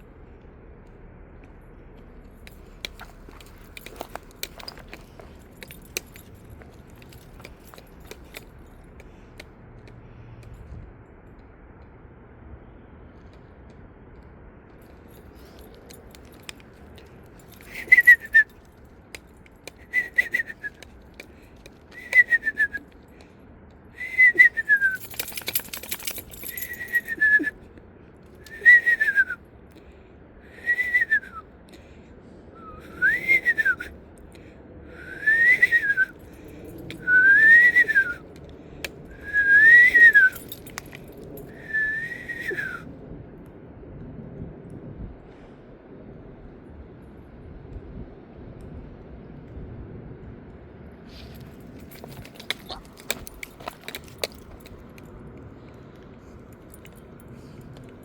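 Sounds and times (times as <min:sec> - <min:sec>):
person whistling owl calls: 0:17.7 - 0:18.5, 0:19.8 - 0:20.9, 0:21.9 - 0:22.9, 0:24.0 - 0:25.0, 0:28.5 - 0:29.4, 0:32.6 - 0:34.0, 0:34.9 - 0:36.2, 0:37.0 - 0:38.2, 0:39.2 - 0:40.4, 0:41.6 - 0:42.9.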